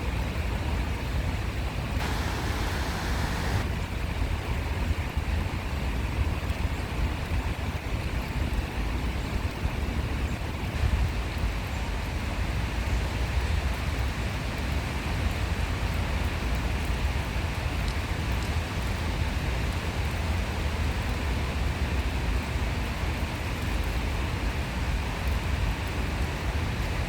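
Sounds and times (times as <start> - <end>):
stream flowing: 2.0 - 3.7.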